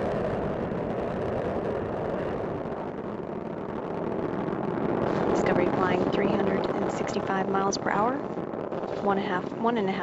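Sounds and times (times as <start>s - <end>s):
rocket exhaust rumble: 0.0s - 10.0s.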